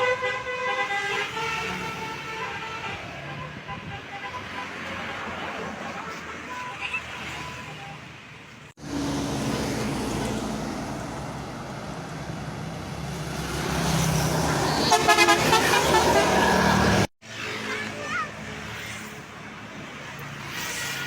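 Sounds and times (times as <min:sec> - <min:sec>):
bus engine and tyre noise: 0:00.0 - 0:21.0
multi-tone musical horn: 0:14.8 - 0:16.9.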